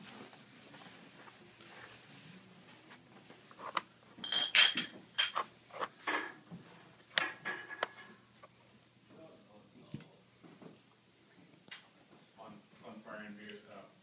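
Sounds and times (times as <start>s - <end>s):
hard objects clinking together: 4.2s - 6.4s.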